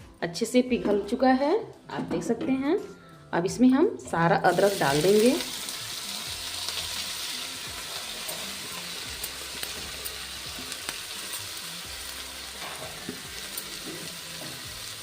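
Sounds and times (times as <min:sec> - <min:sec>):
ginger sizzling in ghee: 0:04.5 - 0:15.0.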